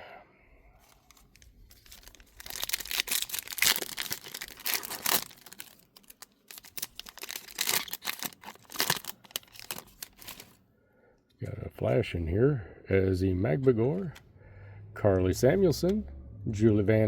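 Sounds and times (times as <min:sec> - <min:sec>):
card pack wrapper tearing and crinkling: 0:00.8 - 0:10.6.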